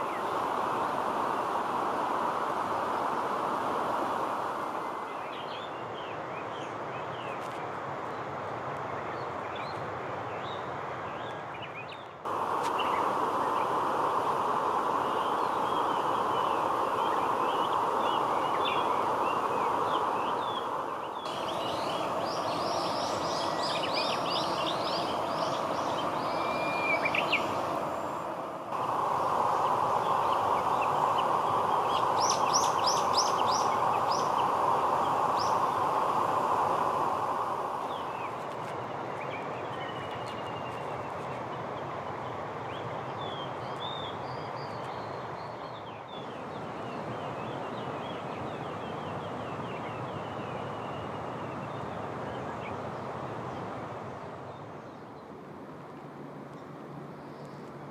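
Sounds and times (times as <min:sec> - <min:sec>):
rushing background noise: 0:00.0 - 0:05.6, 0:12.3 - 0:43.0
small birds calling and singing: 0:14.8 - 0:36.6, 0:42.7 - 0:53.1.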